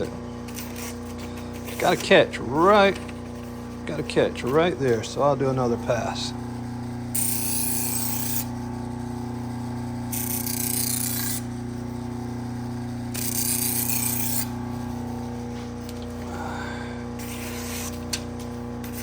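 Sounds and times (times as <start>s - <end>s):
motor hum: 0.0s - 19.0s
knife rasping on sharpening wheel: 7.2s - 8.5s, 10.1s - 11.5s, 13.2s - 14.6s, 17.2s - 18.2s.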